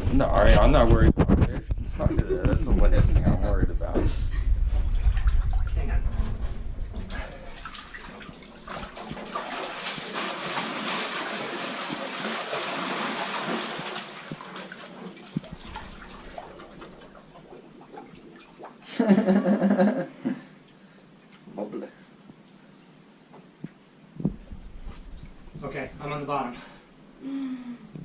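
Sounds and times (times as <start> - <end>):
water sloshing and splashing: 4.5 - 18.9, 24.2 - 26.9.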